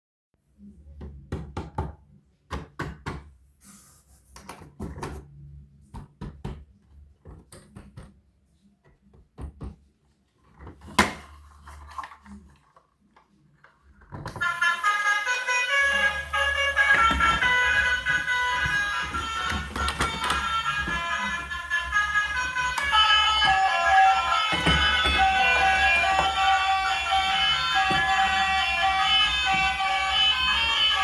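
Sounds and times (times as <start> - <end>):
bright melodic music: 14.4 - 31.0
knocks and clicks: 16.6 - 21.5, 22.3 - 30.5.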